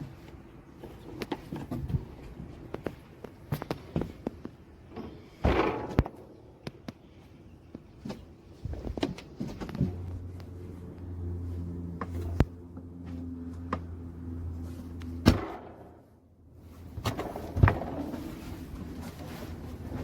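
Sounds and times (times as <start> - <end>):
steady low hum: 0.0 - 20.0
sharp knocks and thuds: 15.2 - 16.0, 17.0 - 18.5.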